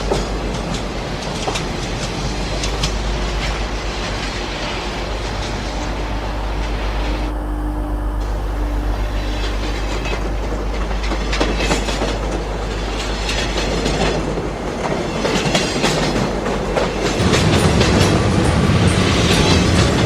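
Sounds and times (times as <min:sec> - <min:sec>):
train rumble: 0:00.0 - 0:20.0
train wheels clacking: 0:00.0 - 0:20.0.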